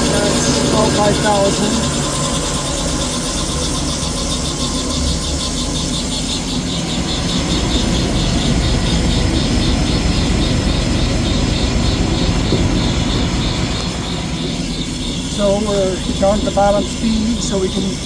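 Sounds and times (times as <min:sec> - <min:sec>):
fast rhythmic pulsing: 0:00.0 - 0:18.0
bandsaw running: 0:11.7 - 0:18.0.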